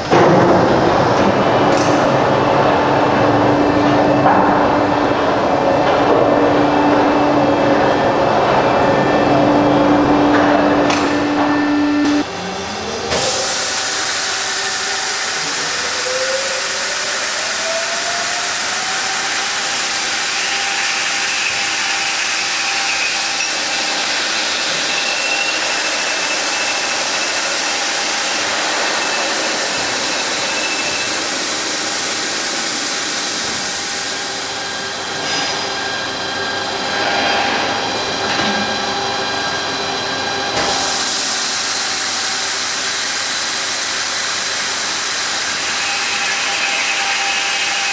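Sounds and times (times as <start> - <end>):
drilling machine hiss: 13.2 - 17.6, 18.4 - 34.7, 40.7 - 47.9.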